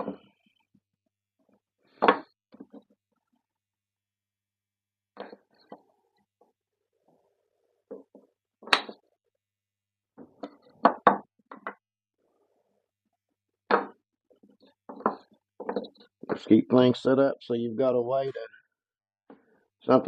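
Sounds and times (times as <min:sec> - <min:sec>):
wooden strips knocking: 0:14.9 - 0:16.5.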